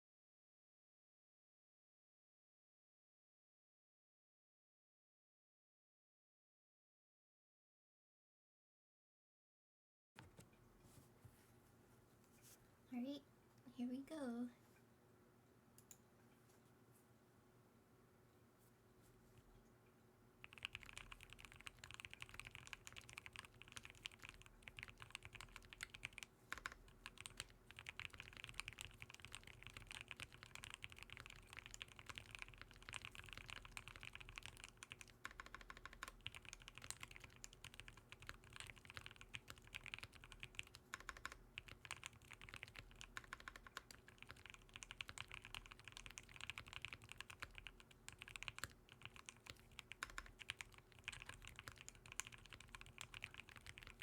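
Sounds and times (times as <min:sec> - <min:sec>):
mechanical keyboard typing: 0:20.4 - 0:54.0.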